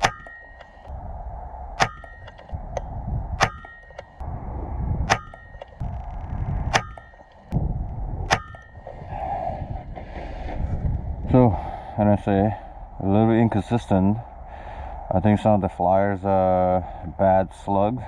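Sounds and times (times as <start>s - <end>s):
air rifle shots: 1.8s - 2.6s, 3.3s - 4.2s, 5.0s - 5.8s, 6.6s - 7.5s.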